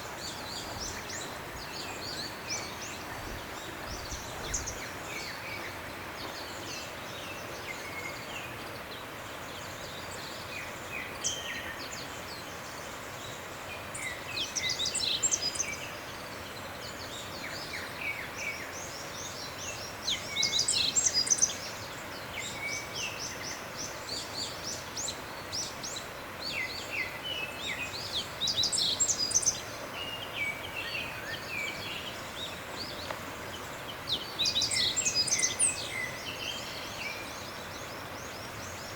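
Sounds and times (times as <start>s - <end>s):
small birds chirping and trilling: 0.0s - 38.9s
steady background hiss: 0.0s - 38.9s.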